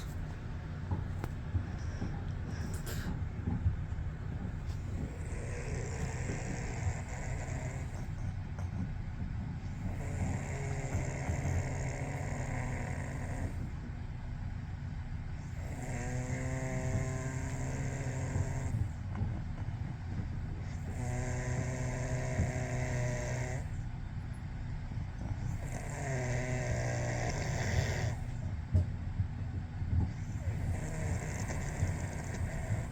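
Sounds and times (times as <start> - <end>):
person snoring: 5.0 - 8.1, 9.9 - 13.7, 15.5 - 18.8, 20.8 - 23.8, 25.5 - 28.3, 30.4 - 32.9.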